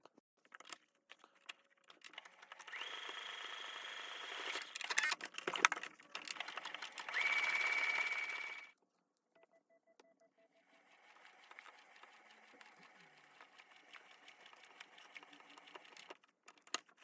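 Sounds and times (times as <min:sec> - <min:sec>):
sewing machine motor whine: 0:02.2 - 0:04.8, 0:06.3 - 0:08.7, 0:10.6 - 0:16.1.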